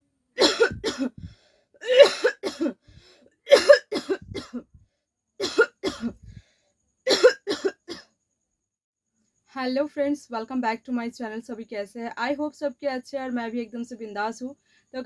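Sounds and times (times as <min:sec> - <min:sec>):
person coughing: 0:00.4 - 0:02.8, 0:03.5 - 0:04.7, 0:05.4 - 0:06.4, 0:07.1 - 0:08.0.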